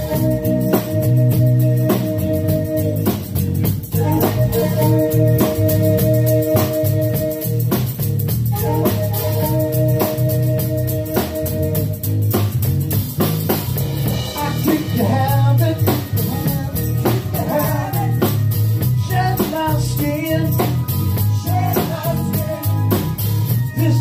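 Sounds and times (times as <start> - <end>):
pop rock song: 0.0 - 24.0.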